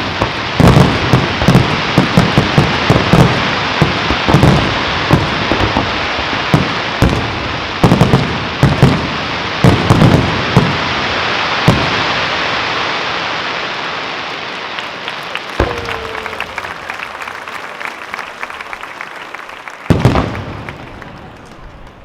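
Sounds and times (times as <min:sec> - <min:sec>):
firework hiss: 0:00.0 - 0:17.2
firework bangs: 0:00.0 - 0:22.0.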